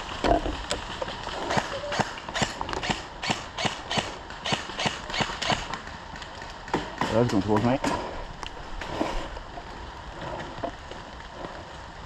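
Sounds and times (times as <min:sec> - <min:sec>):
footsteps: 0:05.4 - 0:11.8.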